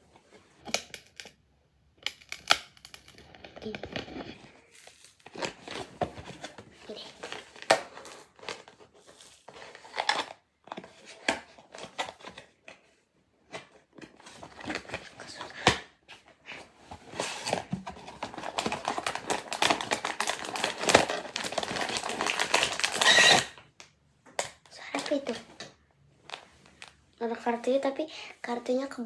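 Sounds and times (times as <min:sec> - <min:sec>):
packaging tearing: 0:02.1 - 0:06.5, 0:07.2 - 0:10.4, 0:17.2 - 0:23.6
packaging rustling and crackling: 0:02.1 - 0:12.8, 0:13.5 - 0:15.7, 0:16.5 - 0:23.6.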